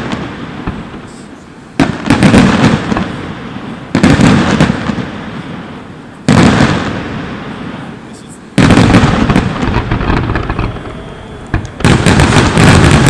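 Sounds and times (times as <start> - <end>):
fireworks bangs: 0.0 - 13.0
fireworks crackling and rumble: 0.0 - 13.0.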